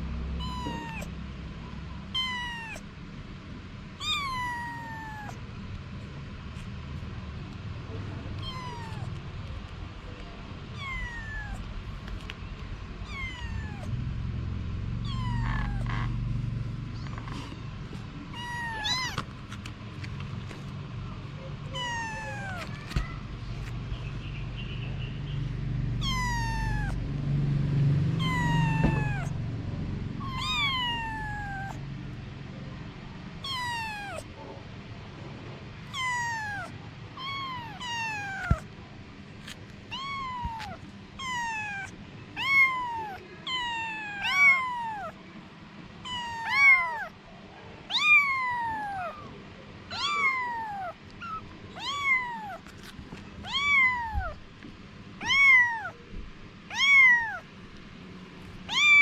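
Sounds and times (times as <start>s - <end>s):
kitten meowing: 0.4s - 1.2s, 2.1s - 2.8s, 4.0s - 5.4s, 8.3s - 9.2s, 10.8s - 11.7s, 13.0s - 14.0s, 15.0s - 16.2s, 18.3s - 19.3s, 21.6s - 23.2s, 26.0s - 27.0s, 28.2s - 29.4s, 30.2s - 31.8s, 33.4s - 34.3s, 35.9s - 38.7s, 39.4s - 45.2s, 46.0s - 47.2s, 47.9s - 54.4s, 55.2s - 56.0s, 56.7s - 57.5s, 58.7s - 59.0s.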